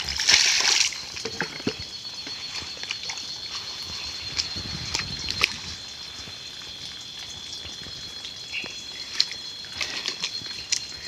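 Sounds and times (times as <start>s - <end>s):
water splashing and dripping: 0.0s - 11.0s.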